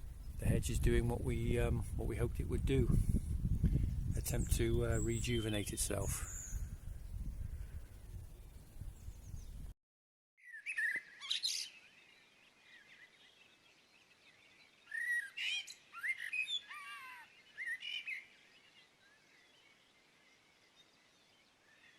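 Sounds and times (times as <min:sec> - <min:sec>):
birds chirping: 0:00.0 - 0:09.7.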